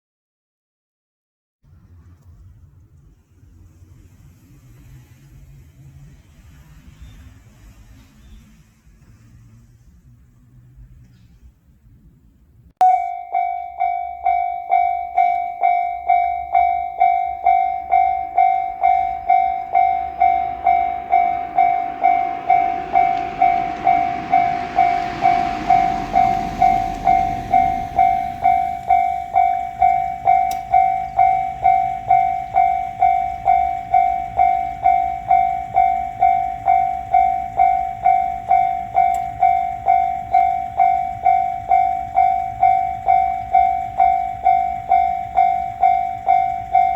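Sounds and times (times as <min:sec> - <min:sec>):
level crossing warning bell: 0:12.8 - 0:46.9
rushing noise: 0:12.8 - 0:46.9.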